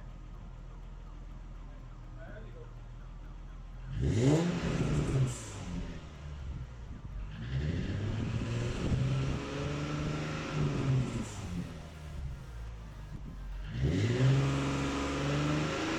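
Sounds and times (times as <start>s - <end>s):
car engine revving deep: 3.8s - 15.9s.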